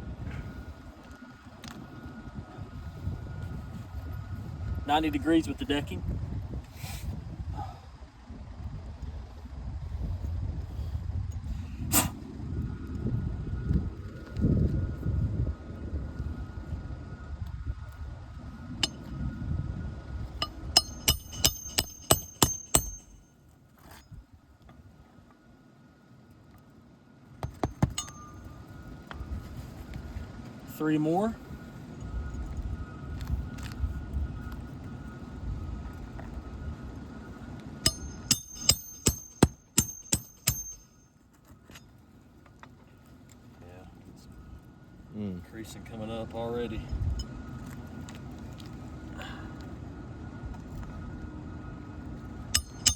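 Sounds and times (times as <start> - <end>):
hammer striking metal tool: 20.4 - 23.2, 27.4 - 28.5, 37.8 - 41.0, 52.5 - 52.9.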